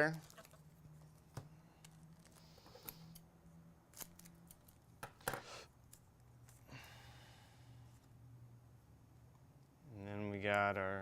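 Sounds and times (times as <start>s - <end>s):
cards clicking and rustling: 3.9s - 6.6s.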